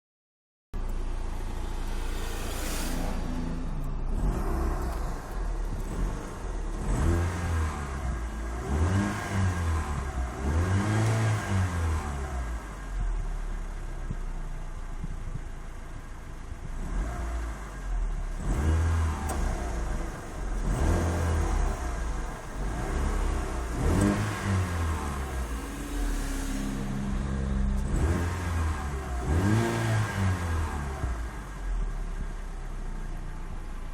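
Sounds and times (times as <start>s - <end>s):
car engine revving: 0.8s - 13.2s, 16.6s - 32.2s.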